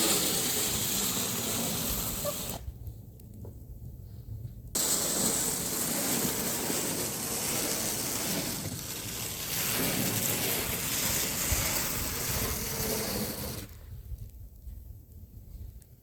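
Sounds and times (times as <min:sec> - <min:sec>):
snow shovel scraping pavement: 0:00.0 - 0:02.6, 0:04.8 - 0:13.8.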